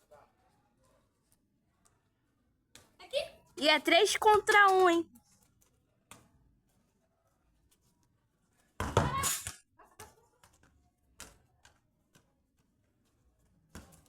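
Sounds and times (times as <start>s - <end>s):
ball being kicked: 8.8s - 10.2s.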